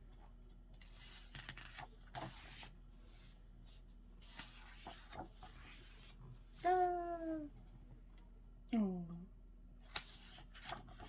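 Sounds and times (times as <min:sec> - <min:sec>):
paper pages rustling: 0:09.9 - 0:11.0.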